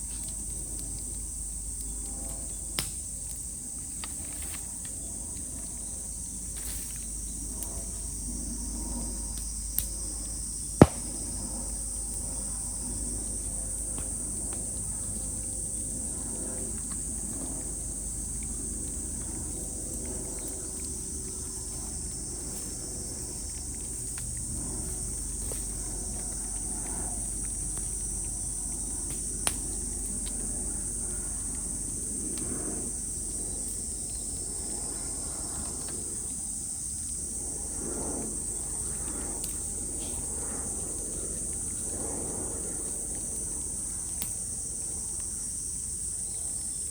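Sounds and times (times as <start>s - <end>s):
cicadas droning: 0.0s - 46.9s
bamboo popping in fire: 0.2s - 5.4s, 9.4s - 11.7s, 29.0s - 30.4s, 44.0s - 44.6s.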